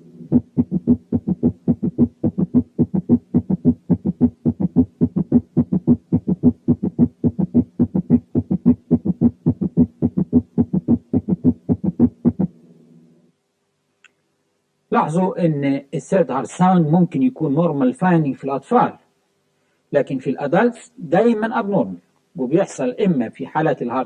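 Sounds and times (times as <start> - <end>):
galloping heartbeat thuds: 0.3 - 12.5.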